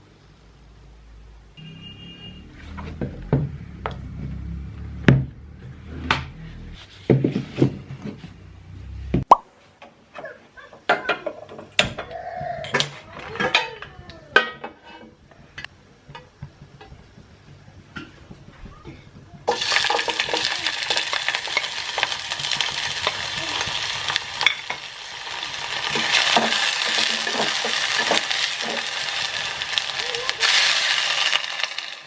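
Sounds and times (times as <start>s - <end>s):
small objects knocking and clattering: 19.5s - 32.0s.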